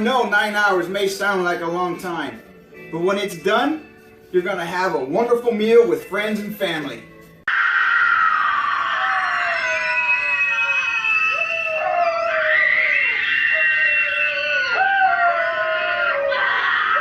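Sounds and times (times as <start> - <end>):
person screaming: 7.5 - 17.0.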